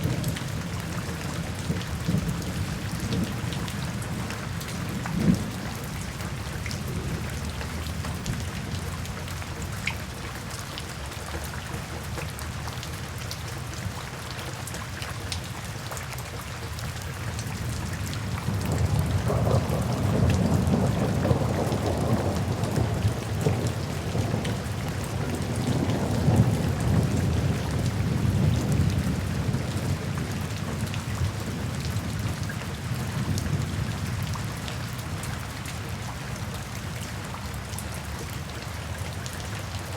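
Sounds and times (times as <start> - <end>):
low rumble of thunder: 0.0 - 9.2, 17.4 - 36.8
steady rain falling: 0.0 - 39.9.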